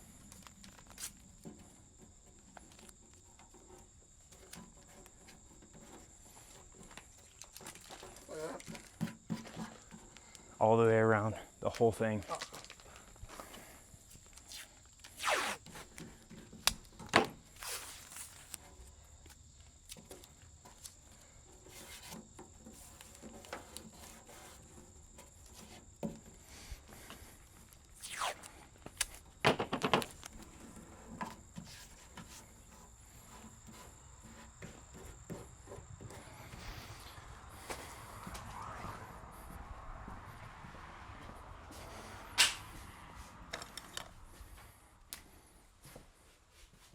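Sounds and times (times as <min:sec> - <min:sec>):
tape handling clicks and rubbing: 0:12.3 - 0:21.0, 0:27.1 - 0:33.7
tape ripped off a roll: 0:14.2 - 0:18.7, 0:27.9 - 0:30.3, 0:42.3 - 0:43.1.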